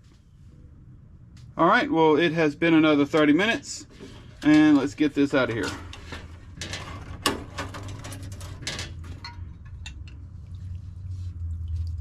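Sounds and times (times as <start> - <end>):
steady low hum: 0.0 - 12.0
metal parts clinking in basket: 4.4 - 9.4.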